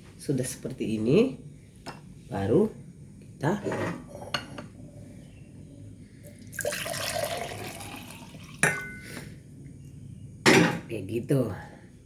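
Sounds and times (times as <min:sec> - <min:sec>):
liquid pouring into glass: 0:06.5 - 0:08.9
glass clink: 0:08.6 - 0:09.0.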